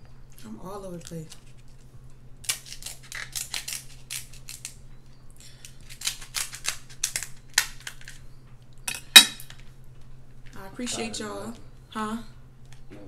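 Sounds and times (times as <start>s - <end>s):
scissors snipping crab shell: 2.4s - 4.8s, 5.8s - 8.2s.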